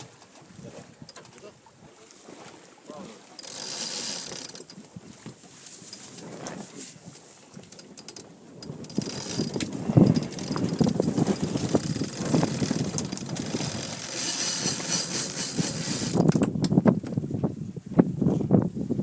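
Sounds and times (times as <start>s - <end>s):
water rushing past boat: 0.0s - 16.5s
wind: 0.0s - 19.0s
boat knocks and rattles: 3.4s - 17.5s.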